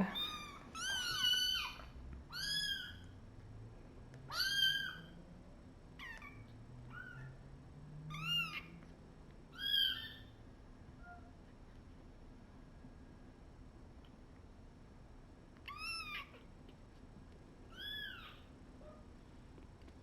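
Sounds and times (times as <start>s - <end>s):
cat meowing: 0.1s - 3.0s, 4.3s - 5.2s, 8.1s - 8.7s, 15.6s - 16.5s, 17.7s - 19.0s.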